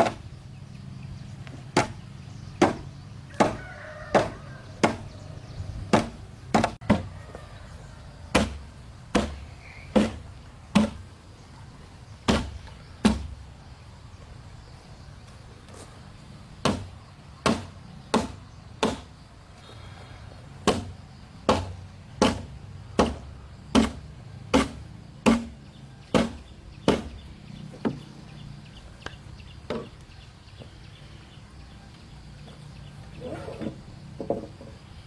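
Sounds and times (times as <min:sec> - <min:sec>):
hand tool striking wood: 0:00.0 - 0:00.3, 0:01.8 - 0:02.0, 0:02.6 - 0:05.1, 0:05.9 - 0:07.1, 0:08.3 - 0:11.1, 0:12.3 - 0:13.4, 0:16.6 - 0:19.1, 0:20.6 - 0:27.2.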